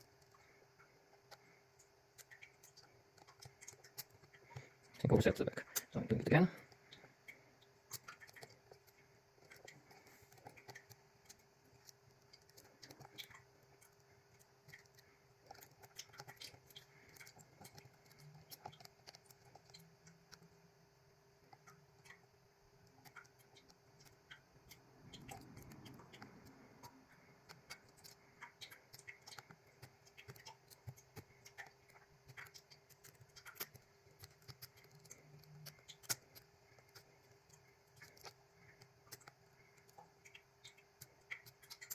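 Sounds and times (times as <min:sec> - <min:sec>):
faint steady hum: 0:00.0 - 0:41.9
lock pick ticking and scratching: 0:25.1 - 0:39.5.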